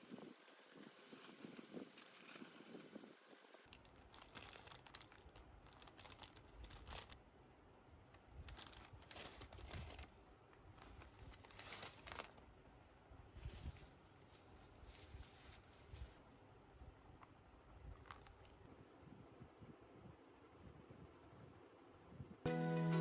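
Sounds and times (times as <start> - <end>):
packaging crinkling and rustling: 3.6 - 7.2, 8.4 - 12.6, 13.4 - 16.2, 17.9 - 18.6.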